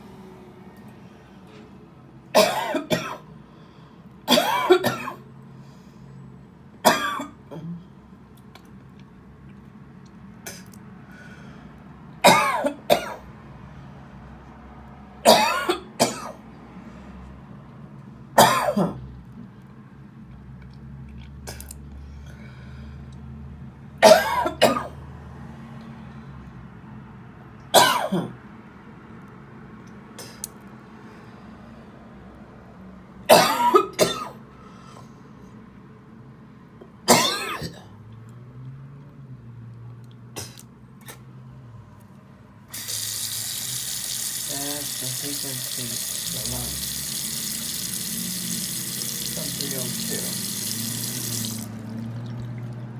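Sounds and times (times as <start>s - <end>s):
woman coughing: 2.4s - 3.2s, 4.3s - 5.2s, 6.8s - 7.8s, 12.2s - 13.2s, 15.3s - 16.4s, 18.4s - 19.0s, 24.0s - 24.9s, 27.8s - 28.3s, 33.3s - 34.4s, 37.1s - 37.9s.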